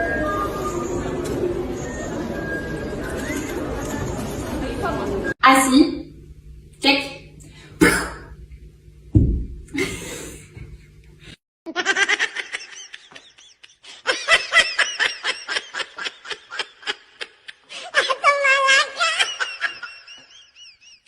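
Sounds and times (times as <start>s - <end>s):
thump: 9.2s - 9.6s
person laughing hard: 9.8s - 10.7s, 11.7s - 21.0s.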